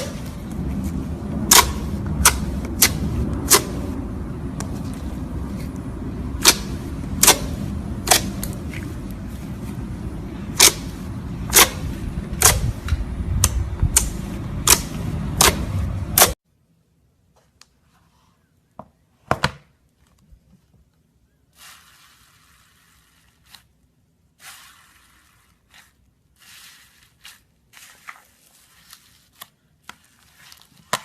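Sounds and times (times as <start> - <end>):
low rumble: 0.0 - 16.4.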